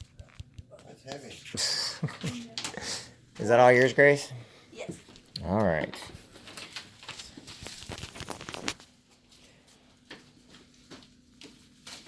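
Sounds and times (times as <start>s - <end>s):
wrapped present rustling: 5.1s - 12.0s.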